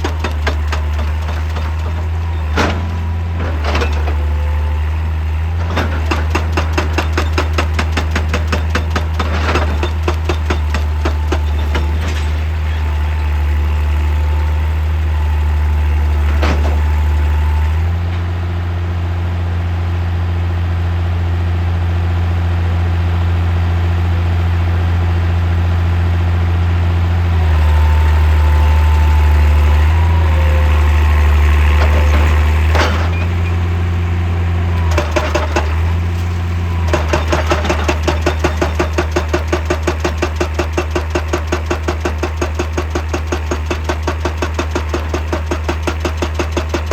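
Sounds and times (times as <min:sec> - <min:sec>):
rock breaker hammering rock: 0:00.0 - 0:04.7, 0:05.5 - 0:13.9, 0:34.6 - 0:46.9
excavator diesel engine running: 0:00.0 - 0:46.9.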